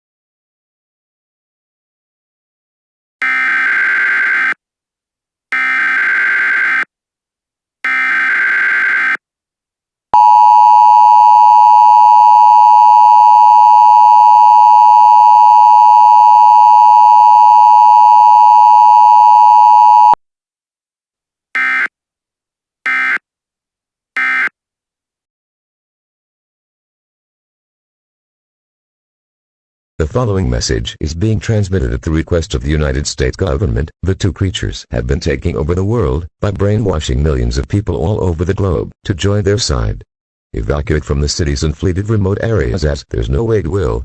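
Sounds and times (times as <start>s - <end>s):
two-tone attention signal: 10.2s - 20.2s, 24.2s - 24.5s.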